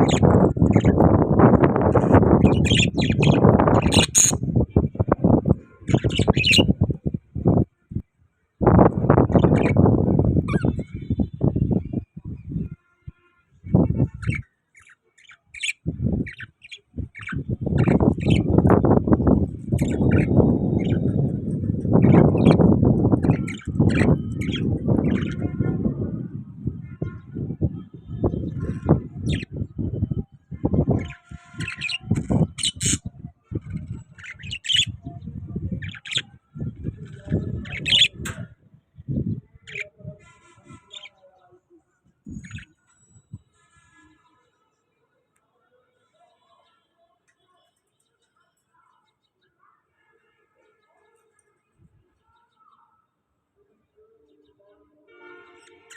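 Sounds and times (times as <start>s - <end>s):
parrots chirping: 0.0s - 1.0s, 2.4s - 4.4s, 5.8s - 6.7s, 9.3s - 9.8s, 14.1s - 18.7s, 19.5s - 25.5s, 30.9s - 33.0s, 33.7s - 35.0s, 35.8s - 36.3s, 37.6s - 38.2s, 42.4s - 42.7s.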